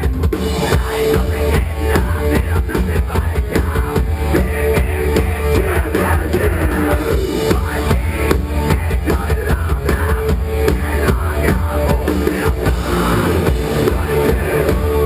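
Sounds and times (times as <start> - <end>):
electric guitars: 0.0 - 15.0
pounding drum kit: 0.0 - 15.0.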